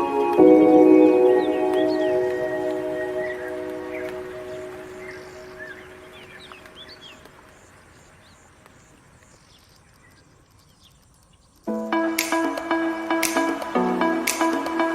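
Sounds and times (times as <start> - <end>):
background music with held notes: 0.0 - 6.7, 11.7 - 14.9.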